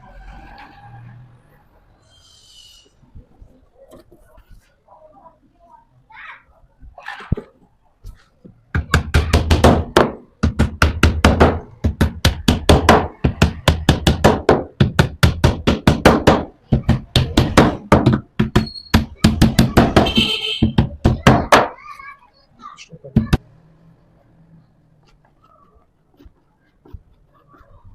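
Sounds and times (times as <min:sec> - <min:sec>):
rapid sharp knocks: 0:08.7 - 0:21.8.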